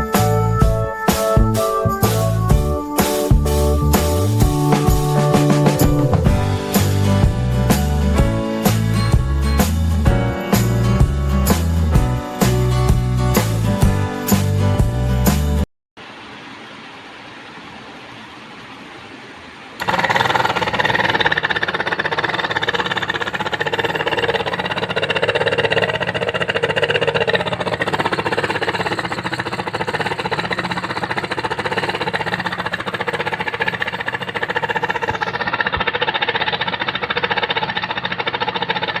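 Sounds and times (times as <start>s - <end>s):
small fan motor running: 16.0s - 39.0s.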